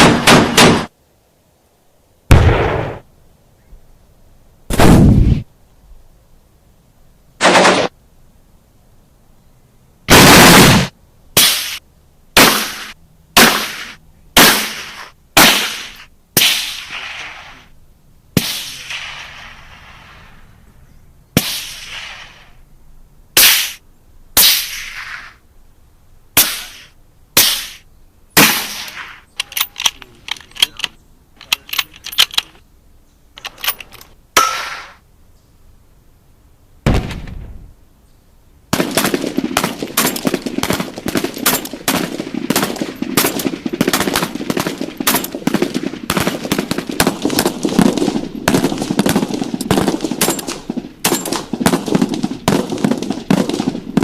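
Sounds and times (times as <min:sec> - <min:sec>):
automatic gunfire: 0:00.0 - 0:00.9, 0:07.4 - 0:07.9, 0:38.7 - 0:54.0
gunshots: 0:00.0 - 0:00.9, 0:02.3 - 0:03.0, 0:04.7 - 0:05.4, 0:07.4 - 0:07.9, 0:10.1 - 0:11.8, 0:12.4 - 0:17.7, 0:18.4 - 0:20.3, 0:21.4 - 0:22.6, 0:28.4 - 0:29.3, 0:36.9 - 0:37.6, 0:38.7 - 0:54.0
deep boom: 0:36.8 - 0:37.7.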